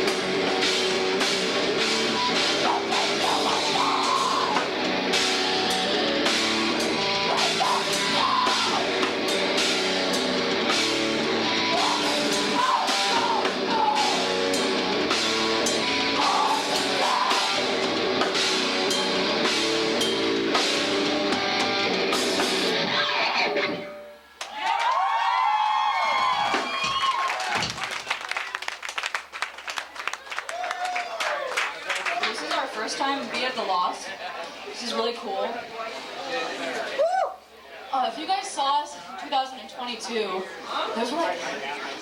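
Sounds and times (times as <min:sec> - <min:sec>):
rock band playing live: 0:00.0 - 0:24.0
audience cheering and applauding: 0:24.4 - 0:32.7.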